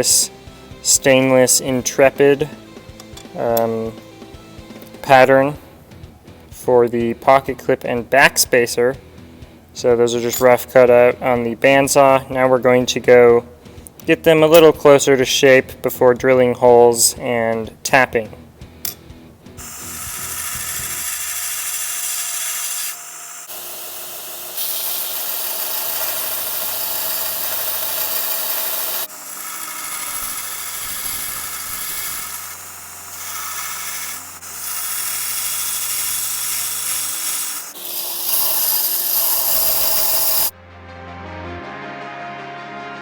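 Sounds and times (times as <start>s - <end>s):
metal grinding on sander: 19.6s - 40.5s
sander motor running: 19.6s - 40.5s.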